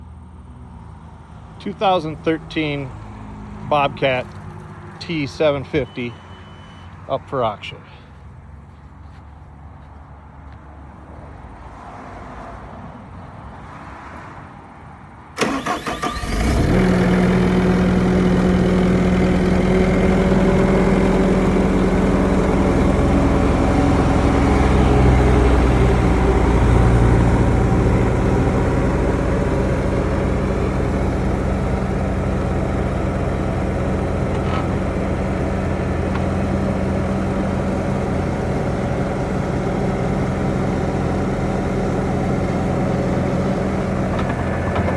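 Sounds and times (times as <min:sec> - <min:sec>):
diesel engine idling: 0:01.6 - 0:09.4, 0:15.4 - 0:44.9
starter cranking: 0:15.4 - 0:17.0.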